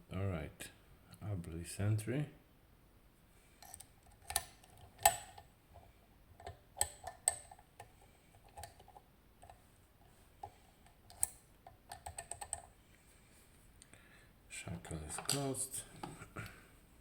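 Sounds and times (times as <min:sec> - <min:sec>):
metallic clicks of padlock picking: 0:03.6 - 0:05.4, 0:06.4 - 0:07.6, 0:11.1 - 0:12.7.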